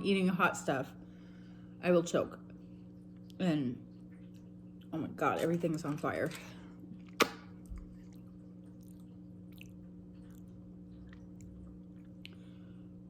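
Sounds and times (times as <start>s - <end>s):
person chewing food: 6.9s - 12.9s.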